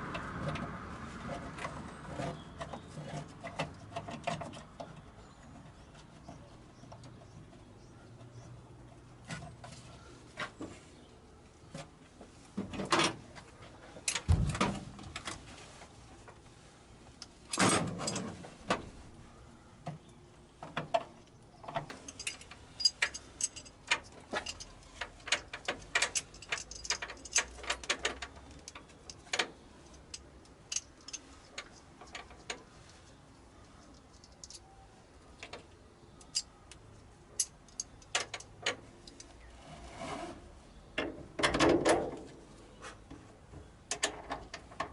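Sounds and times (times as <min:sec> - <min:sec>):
tools clicking and tapping on metal: 0:20.6 - 0:32.7, 0:33.8 - 0:34.7, 0:37.4 - 0:39.4.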